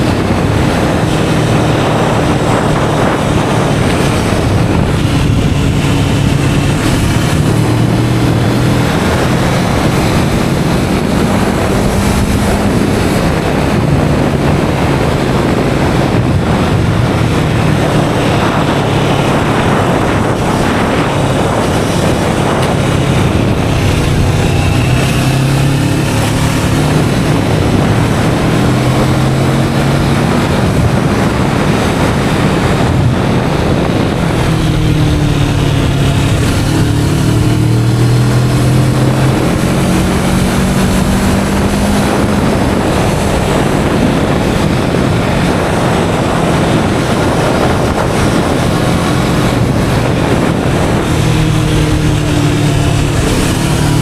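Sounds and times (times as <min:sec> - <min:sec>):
motorcycle engine running: 0:00.0 - 0:54.0
wind buffeting microphone: 0:00.0 - 0:54.0.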